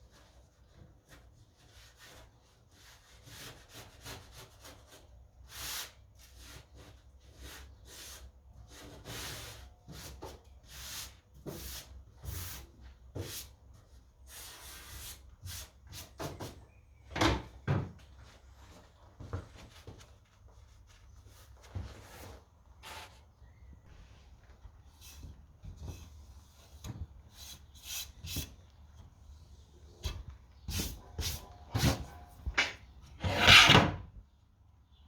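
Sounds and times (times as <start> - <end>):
wooden boards scraping: 32.6 - 34.0.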